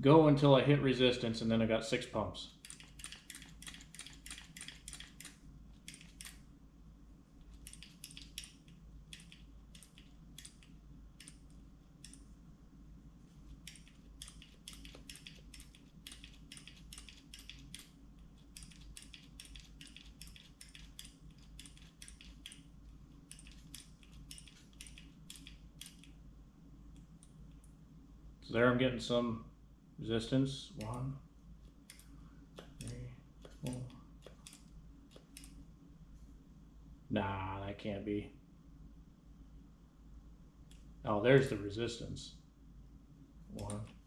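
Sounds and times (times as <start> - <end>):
hand tool clicking: 7.6 - 11.4, 13.6 - 17.9, 23.3 - 26.1.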